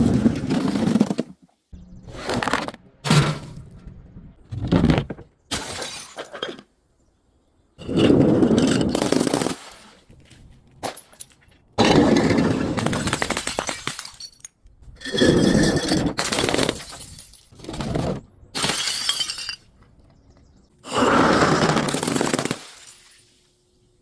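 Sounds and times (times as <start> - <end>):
glass bottles being crushed: 5.5 - 6.6, 10.8 - 19.7, 21.6 - 23.2.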